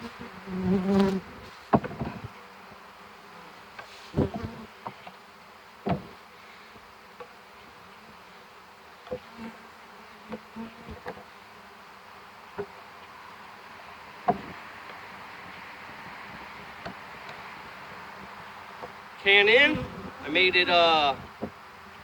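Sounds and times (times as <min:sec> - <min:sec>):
honey bees buzzing: 0:00.0 - 0:22.0
sharp knocks: 0:01.7 - 0:02.2, 0:05.8 - 0:06.1, 0:14.2 - 0:14.6.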